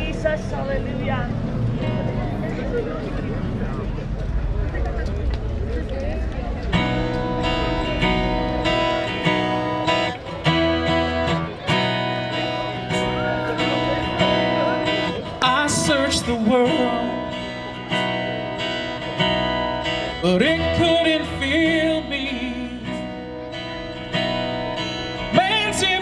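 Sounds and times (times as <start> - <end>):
strummed guitar chords: 0.0 - 4.4, 6.2 - 26.0
worship band music: 6.8 - 26.0.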